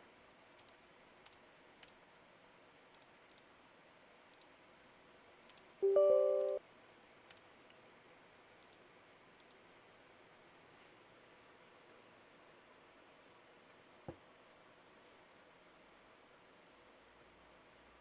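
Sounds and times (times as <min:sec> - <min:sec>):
faint clicks: 0:00.6 - 0:02.0, 0:02.9 - 0:03.5, 0:04.3 - 0:04.5, 0:07.3 - 0:07.8, 0:08.6 - 0:08.8, 0:09.4 - 0:09.6
computer alert chime: 0:05.8 - 0:06.6.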